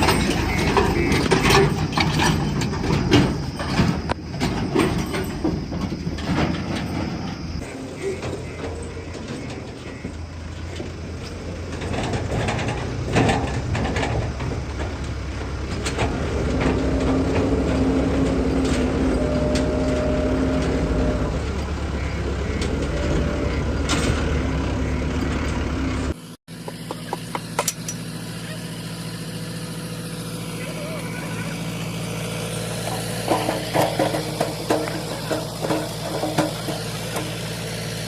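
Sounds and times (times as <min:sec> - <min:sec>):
metallic clanks: 0:00.0 - 0:21.8, 0:26.6 - 0:28.2, 0:32.2 - 0:38.0
diesel engine under load: 0:00.0 - 0:38.0.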